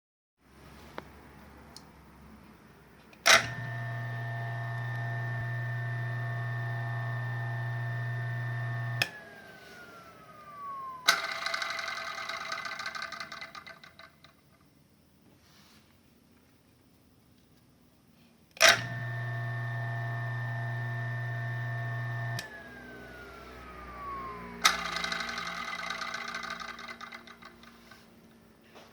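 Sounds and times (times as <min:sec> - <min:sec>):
coffee grinder motor humming and whining: 0:03.4 - 0:13.2, 0:18.6 - 0:27.8
grinder rattling clatter: 0:11.2 - 0:14.3, 0:24.6 - 0:27.9.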